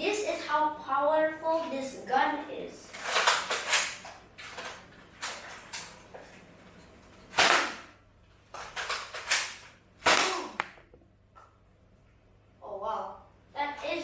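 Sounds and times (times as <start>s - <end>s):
toy dart blaster clacks: 3.0s - 4.1s, 7.4s - 7.9s, 8.6s - 10.9s
dart blaster whooshes: 7.4s - 7.9s, 9.3s - 10.6s.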